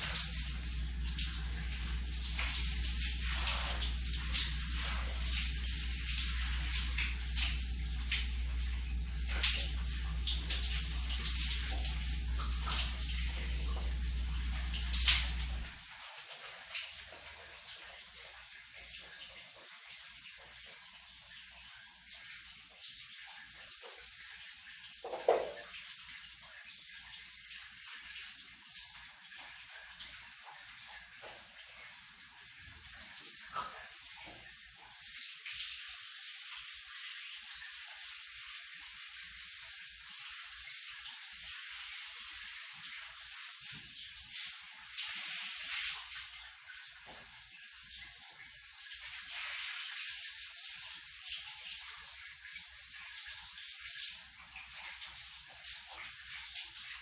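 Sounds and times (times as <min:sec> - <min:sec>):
shower water spraying: 0:00.0 - 0:21.2, 0:27.5 - 0:57.0.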